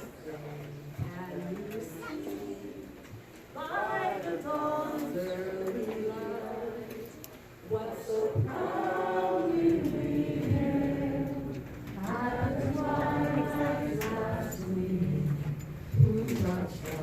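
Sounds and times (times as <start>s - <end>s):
group singing unaccompanied: 0.0s - 17.0s.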